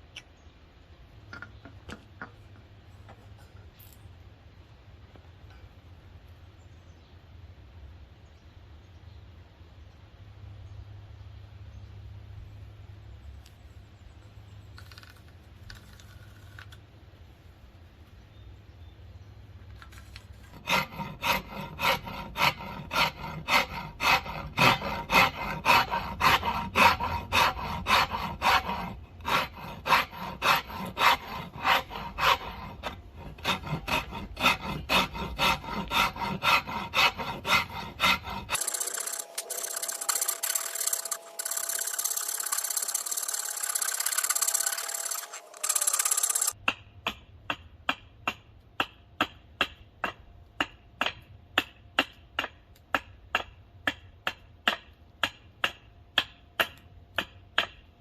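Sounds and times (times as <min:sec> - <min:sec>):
file rasping on wood: 0:20.4 - 0:46.6.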